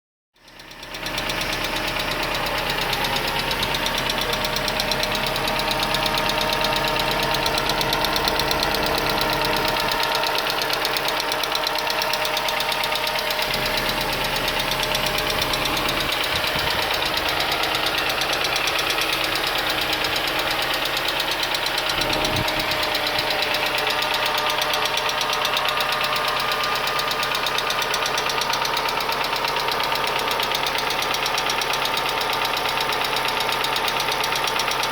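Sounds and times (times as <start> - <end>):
car engine running: 0.4 - 34.9
ticking valve clatter: 0.4 - 34.9.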